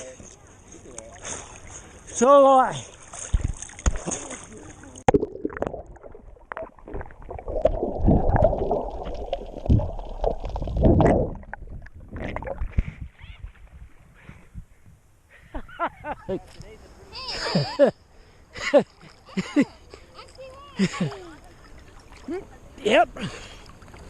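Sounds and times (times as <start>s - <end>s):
water sloshing and gurgling: 0.2s - 14.8s, 20.2s - 24.0s
heavy low water thumps: 3.2s - 4.4s, 5.0s - 14.0s.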